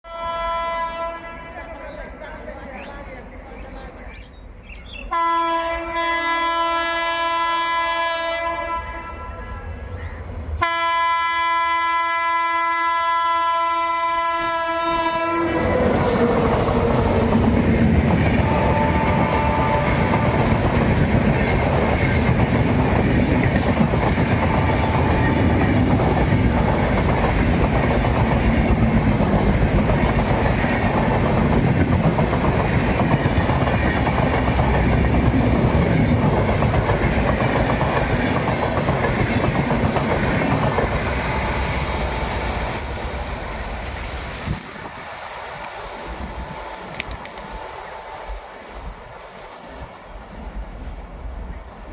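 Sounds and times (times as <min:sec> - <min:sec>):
locomotive horn blasts: 0:00.1 - 0:01.6, 0:05.1 - 0:09.6, 0:10.6 - 0:15.9, 0:18.4 - 0:20.4
train passing: 0:00.1 - 0:51.9.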